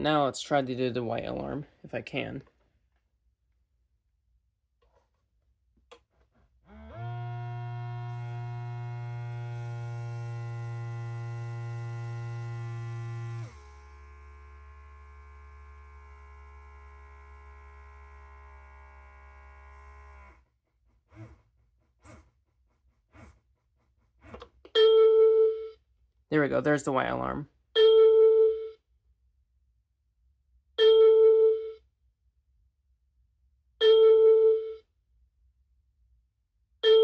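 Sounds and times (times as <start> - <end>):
electrical buzzing hum: 6.8 - 20.3.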